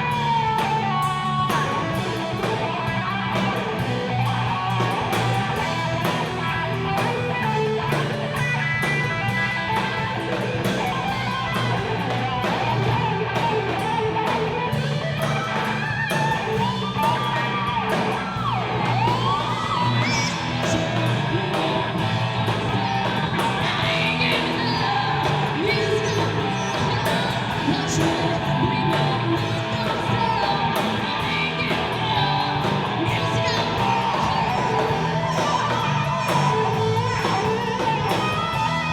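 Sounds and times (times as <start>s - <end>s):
electric guitar: 0.0s - 38.9s
steady drum beat: 0.0s - 38.9s
person singing: 18.9s - 38.9s.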